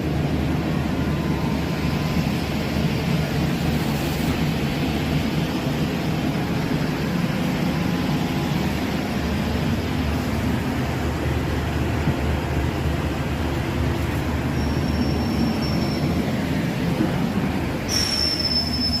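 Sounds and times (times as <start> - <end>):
train rumbling: 0.0 - 19.0
thin high squeal: 14.6 - 16.2, 17.9 - 19.0.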